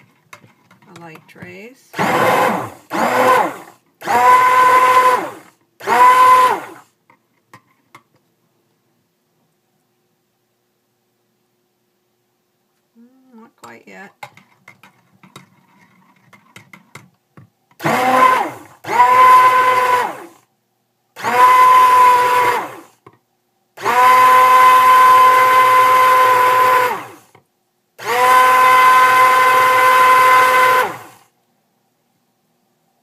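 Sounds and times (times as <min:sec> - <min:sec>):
stick blender motor whine: 0:02.0 - 0:06.8, 0:17.8 - 0:20.4, 0:21.2 - 0:22.9, 0:23.8 - 0:27.4, 0:28.0 - 0:31.2.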